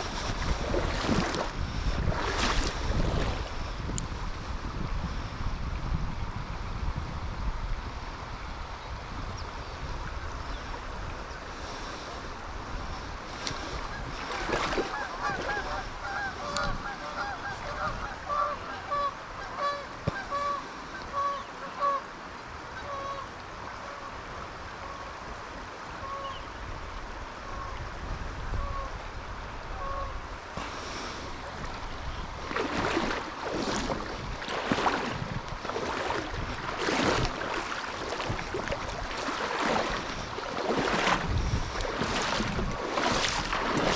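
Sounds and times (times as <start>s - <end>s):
river water rushing: 0.0s - 4.6s, 9.5s - 27.8s, 28.9s - 43.9s
geese honking: 14.9s - 22.0s.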